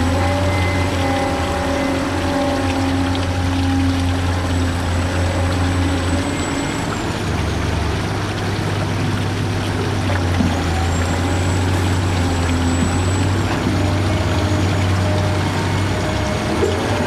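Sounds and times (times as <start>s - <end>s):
high motor whine: 0.0s - 9.1s.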